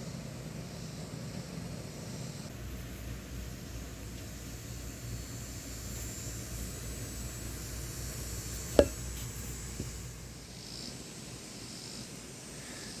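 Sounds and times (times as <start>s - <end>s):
low background rumble: 2.5s - 10.5s.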